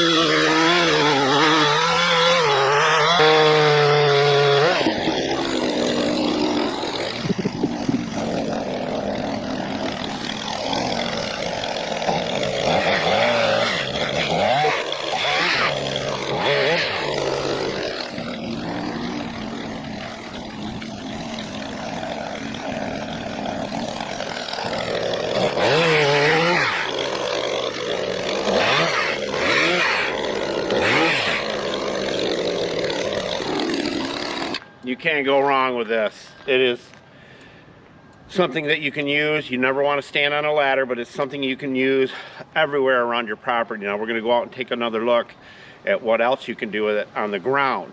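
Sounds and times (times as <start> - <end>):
pole saw engine revving: 0.0 - 34.7.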